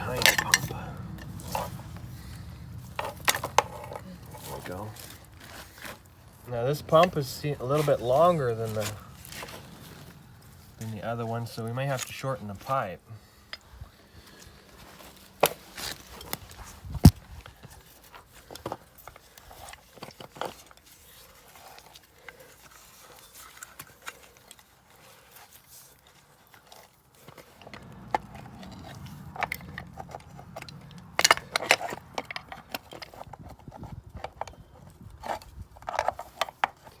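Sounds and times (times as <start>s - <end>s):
low rumble: 0.0s - 5.5s, 27.7s - 31.4s.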